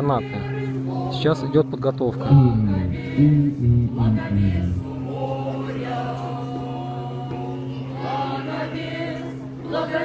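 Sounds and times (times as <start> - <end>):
choir singing: 0.0 - 10.0
held low note: 2.2 - 5.2.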